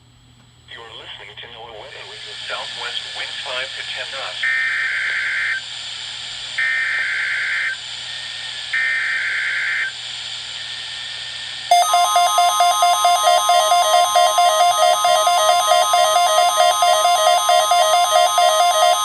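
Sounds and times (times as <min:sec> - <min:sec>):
pulsing alert tone: 0:11.7 - 0:19.0
screechy digital data tones: 0:11.7 - 0:19.0.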